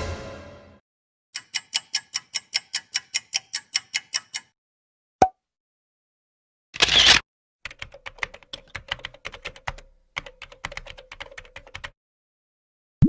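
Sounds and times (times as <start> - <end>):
computer keyboard typing: 7.7 - 12.0.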